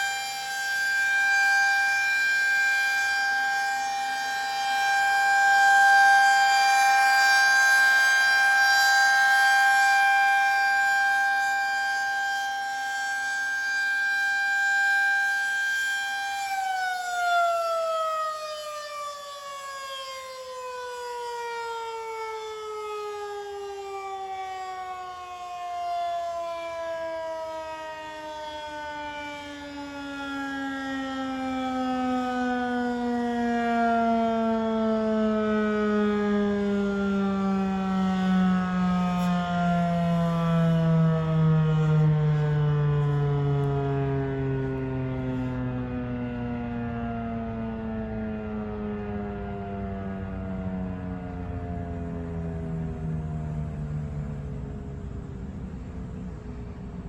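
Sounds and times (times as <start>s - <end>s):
outdoor warning siren: 0.0s - 57.0s.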